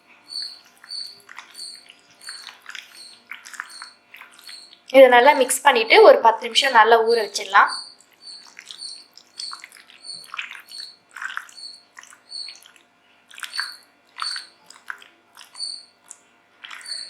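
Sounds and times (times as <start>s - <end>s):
hand squelching fish in batter: 0.3s - 5.1s, 7.6s - 17.0s.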